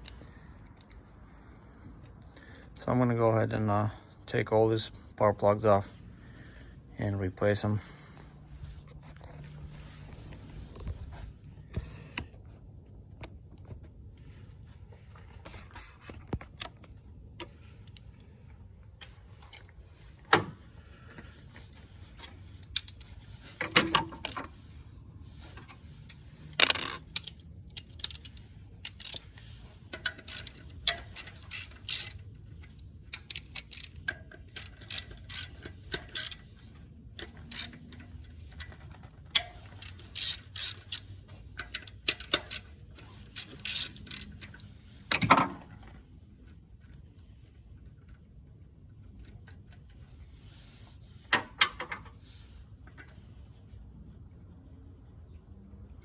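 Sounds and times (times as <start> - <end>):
socket ratchet clicking: 30.0 - 32.3, 33.2 - 36.5, 37.2 - 38.7, 39.4 - 42.7, 43.3 - 45.3.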